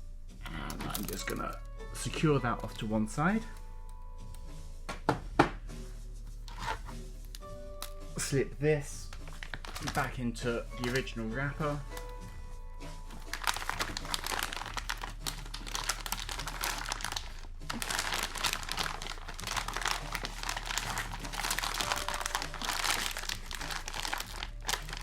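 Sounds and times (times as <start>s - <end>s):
plastic bag crinkling: 0.5s - 1.6s, 9.0s - 12.1s, 13.1s - 25.0s.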